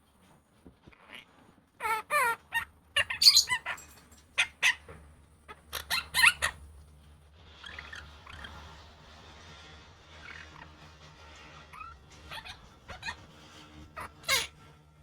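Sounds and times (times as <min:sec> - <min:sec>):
parakeet squawking: 0:01.8 - 0:04.9, 0:05.5 - 0:06.6, 0:07.6 - 0:08.6, 0:10.2 - 0:10.7, 0:11.7 - 0:13.3, 0:14.0 - 0:14.5.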